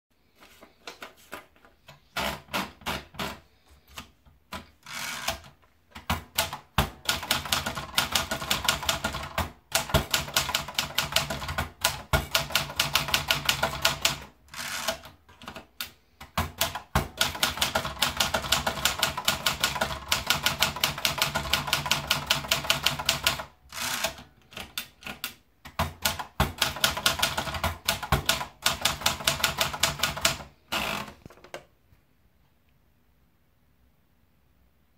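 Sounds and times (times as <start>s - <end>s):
typewriter keystroke clacks: 4.5s - 30.8s.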